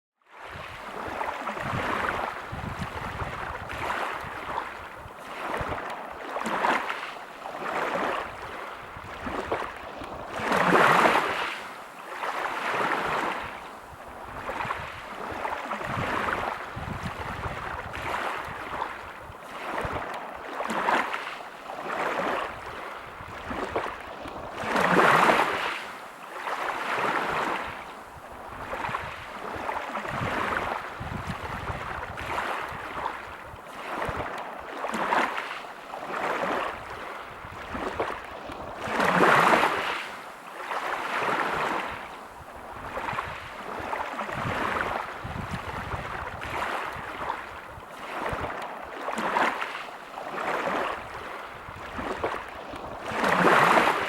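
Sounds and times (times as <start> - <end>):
waves breaking on pebble beach: 0.5 - 54.0.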